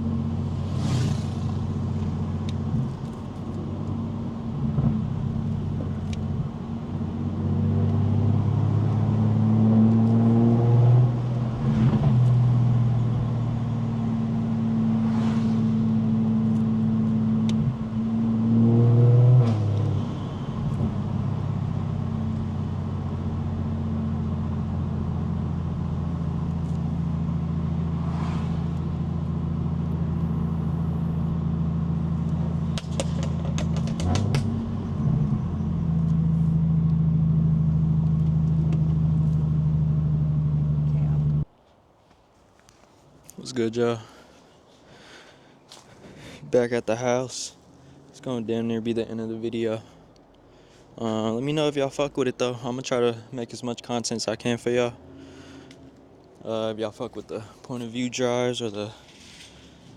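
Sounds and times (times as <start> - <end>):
car engine running at low revs: 0.0 - 41.5.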